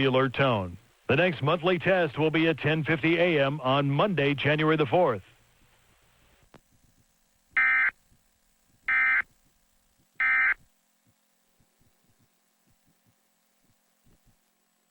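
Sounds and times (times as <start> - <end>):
buzzy digital data bursts: 7.2 - 8.0, 8.9 - 9.3, 10.2 - 10.9.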